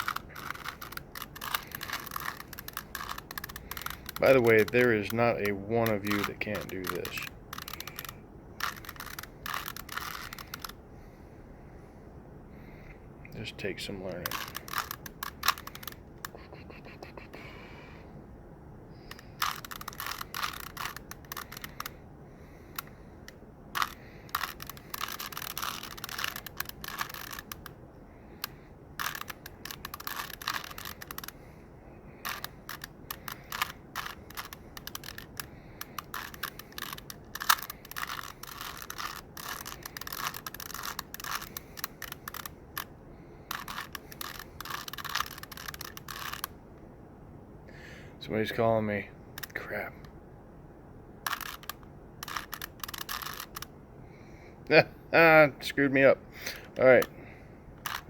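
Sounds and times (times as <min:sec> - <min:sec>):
plastic puzzle cube clicking: 0:00.0 - 0:10.8, 0:14.1 - 0:16.5, 0:19.0 - 0:22.0, 0:22.7 - 0:27.8, 0:28.4 - 0:31.4, 0:32.2 - 0:46.5, 0:49.4 - 0:49.6, 0:51.2 - 0:53.7, 0:57.8 - 0:58.0.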